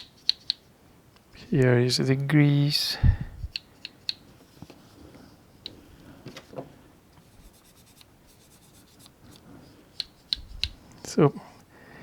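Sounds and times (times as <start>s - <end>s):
metal multi-tool rubbing and clicking: 0.0s - 0.6s.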